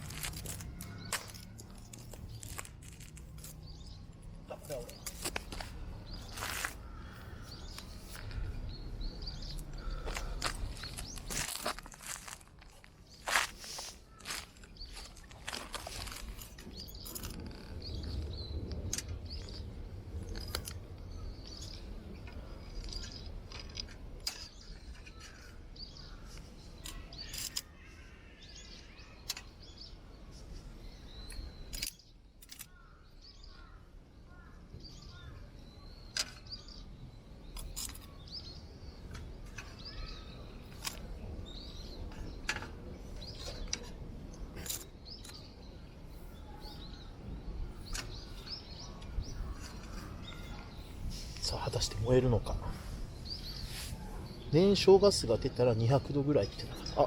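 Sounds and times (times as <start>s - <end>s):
small birds chirping: 0.0s - 57.0s
wind buffeting microphone: 14.2s - 25.0s, 38.3s - 54.6s.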